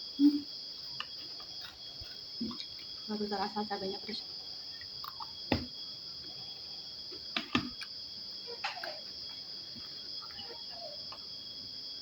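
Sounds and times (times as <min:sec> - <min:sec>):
crickets trilling: 0:00.0 - 0:12.0
clicks and knocks of eating: 0:04.8 - 0:05.7, 0:07.1 - 0:08.0, 0:08.6 - 0:10.4.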